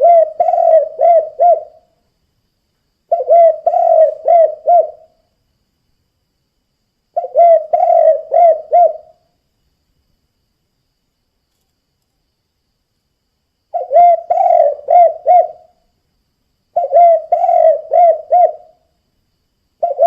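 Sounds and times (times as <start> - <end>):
dove cooing: 0.0 - 1.9, 3.1 - 5.2, 7.2 - 9.2, 13.7 - 15.7, 16.8 - 18.8, 19.8 - 20.0.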